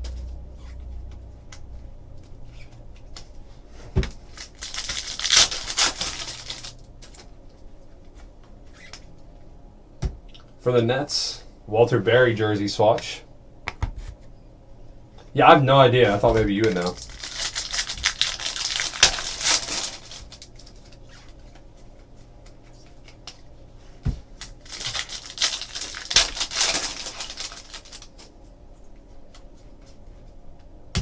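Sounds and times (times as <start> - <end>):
wrappers crinkling and tearing: 4.2 - 7.3, 16.1 - 21.6, 24.3 - 28.3.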